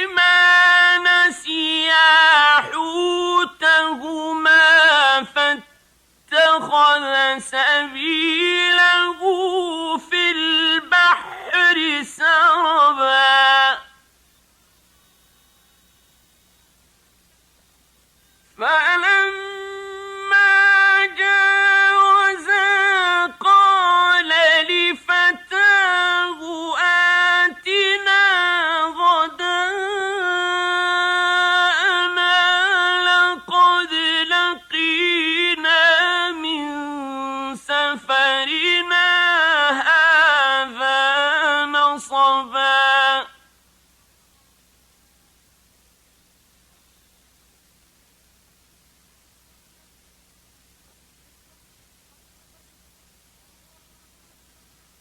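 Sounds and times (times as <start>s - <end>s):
man reciting melodically: 0.0s - 14.0s, 18.6s - 43.6s.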